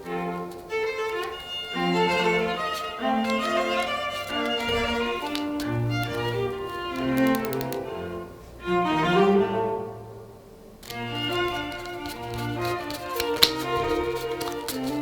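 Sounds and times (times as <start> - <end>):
bowed strings playing held notes: 0.0 - 9.6
sharp clicks: 3.2 - 8.0.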